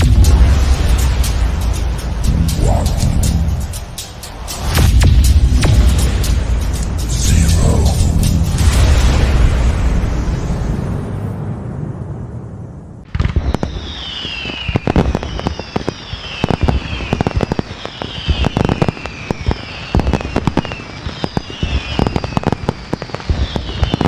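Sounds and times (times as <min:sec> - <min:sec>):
fireworks cracks and bangs: 0:00.0 - 0:11.8, 0:13.0 - 0:24.0
falling whistle: 0:13.4 - 0:22.5.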